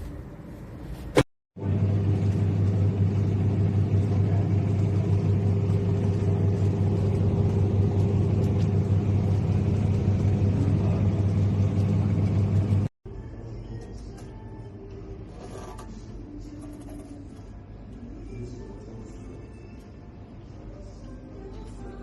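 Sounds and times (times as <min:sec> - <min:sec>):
washing machine running: 0:00.0 - 0:12.9.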